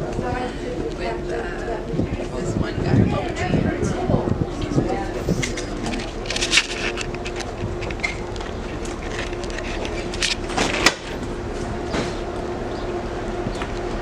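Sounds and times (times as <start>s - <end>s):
low rumble: 0.0s - 14.0s
standing train humming: 0.0s - 14.0s.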